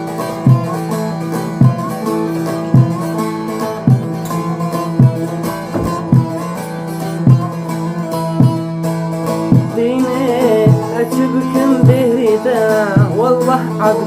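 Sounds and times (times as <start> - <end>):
plucked string melody: 0.0 - 14.0
low drum beat: 3.9 - 7.7.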